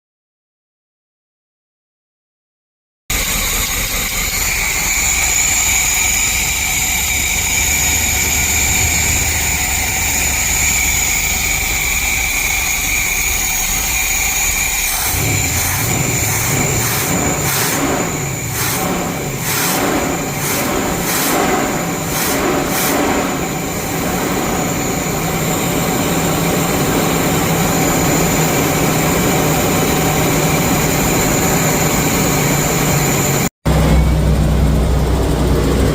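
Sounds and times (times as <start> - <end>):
motorhome engine starting: 3.1 - 35.9
steady high whine: 3.1 - 35.9.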